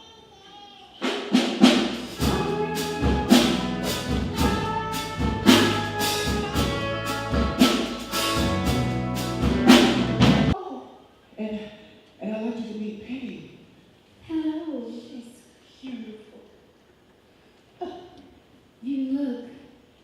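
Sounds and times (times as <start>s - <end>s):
orchestral music: 2.0s - 10.6s.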